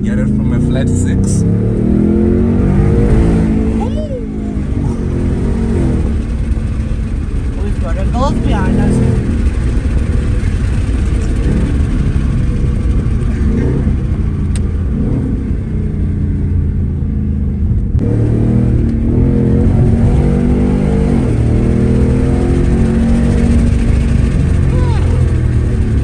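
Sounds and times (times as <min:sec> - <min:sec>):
car engine accelerating: 0:00.0 - 0:26.0.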